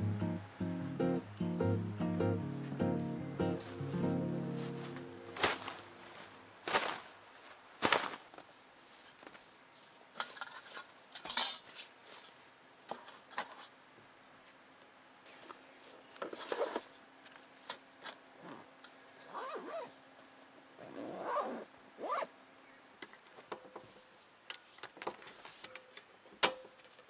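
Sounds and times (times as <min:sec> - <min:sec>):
metal cutlery and cookware clinking: 0:10.2 - 0:11.7.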